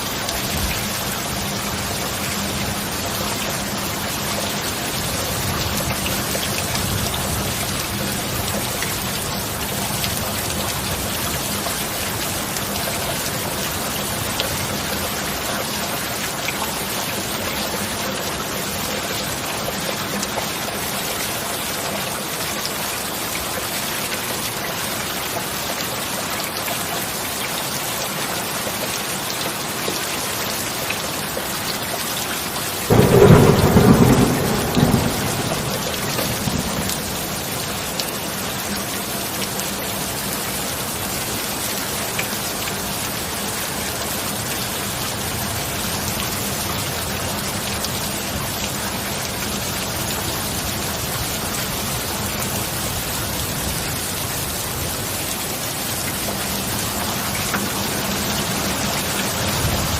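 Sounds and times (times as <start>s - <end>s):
heavy rainfall: 0.0s - 59.9s
thunderclap rumbling: 32.9s - 37.8s.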